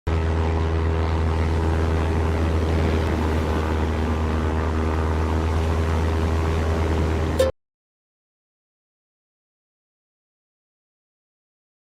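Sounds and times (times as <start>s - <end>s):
truck engine droning: 0.1s - 7.5s.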